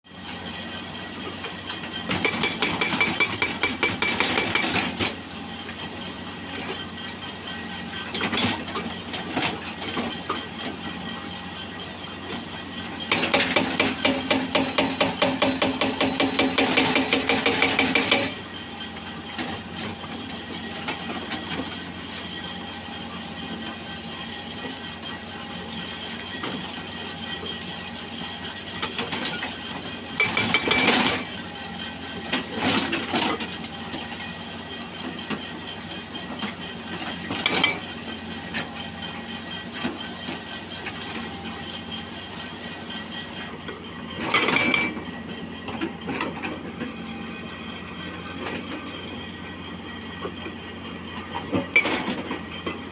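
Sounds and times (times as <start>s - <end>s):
excavator running: 0.1s - 52.9s
metallic clanks and rattles: 30.1s - 31.3s, 36.4s - 37.9s, 43.4s - 52.9s.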